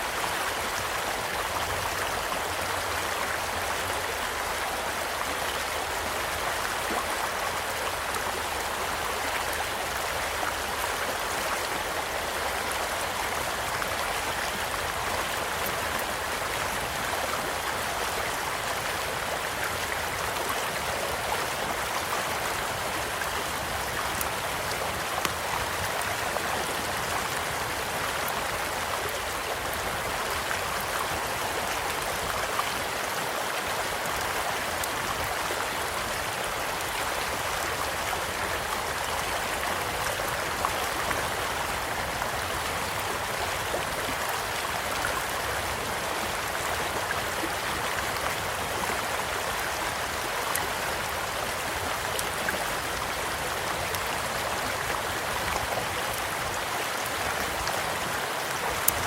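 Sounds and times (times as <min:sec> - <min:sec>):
stream flowing: 0:00.0 - 0:59.0.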